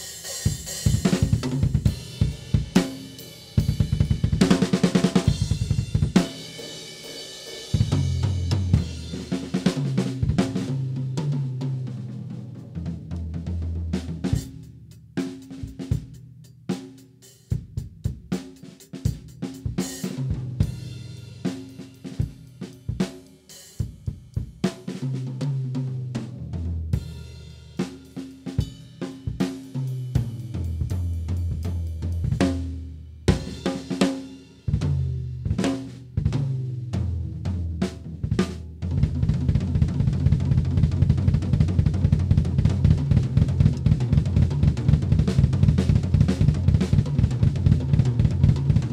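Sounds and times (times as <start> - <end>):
cymbal and hi-hat hits: 0.0 - 3.8
drum kit playing: 0.0 - 48.9.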